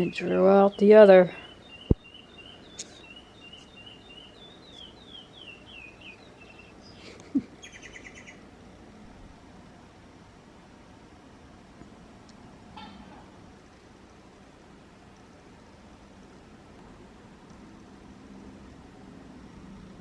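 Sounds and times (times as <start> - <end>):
bird chirping: 0.0 - 8.5.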